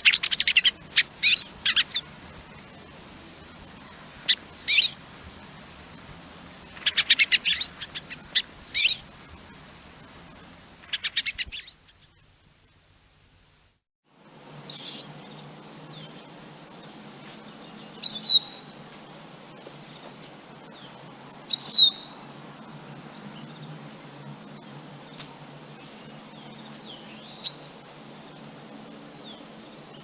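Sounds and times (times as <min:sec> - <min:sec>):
chaffinch calling: 0:00.0 - 0:02.2, 0:04.2 - 0:05.0, 0:06.6 - 0:09.1, 0:10.8 - 0:12.3, 0:14.6 - 0:16.3, 0:17.7 - 0:18.8, 0:20.8 - 0:22.2, 0:25.8 - 0:28.0.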